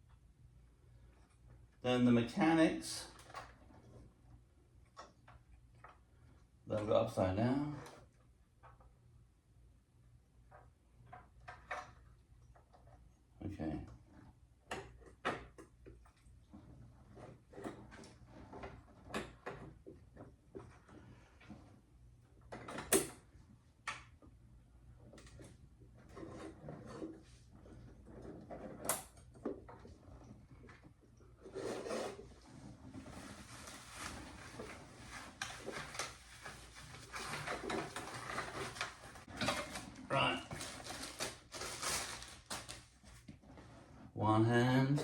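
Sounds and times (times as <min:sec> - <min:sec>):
rustling: 0:29.7 - 0:44.2.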